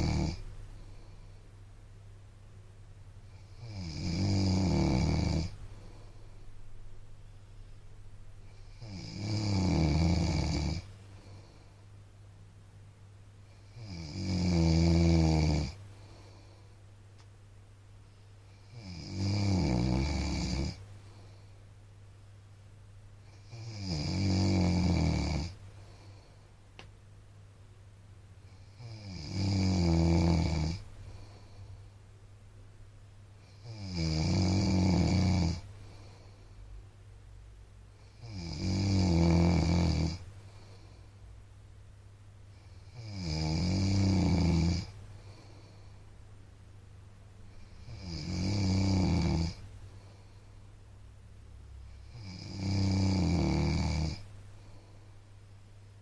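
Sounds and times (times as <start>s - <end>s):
man snoring: 0.0s - 1.0s, 3.3s - 6.0s, 8.6s - 11.5s, 13.6s - 15.8s, 18.6s - 20.8s, 23.3s - 25.6s, 28.5s - 31.5s, 33.4s - 35.7s, 38.0s - 40.3s, 42.6s - 45.0s, 47.6s - 49.7s, 52.0s - 54.3s.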